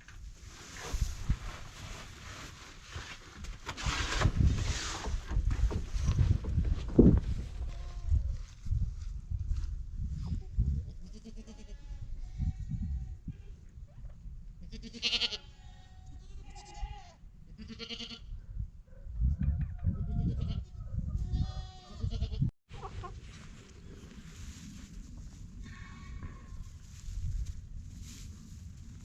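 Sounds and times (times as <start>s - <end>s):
goats bleating: 14.7s - 18.2s.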